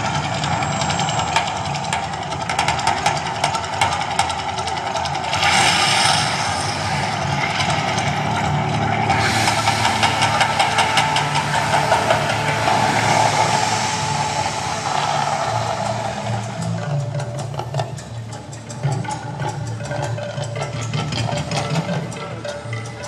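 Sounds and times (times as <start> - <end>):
loud deep rumble: 0.0 - 18.4
rapid rattle of percussive clicks: 0.0 - 23.0.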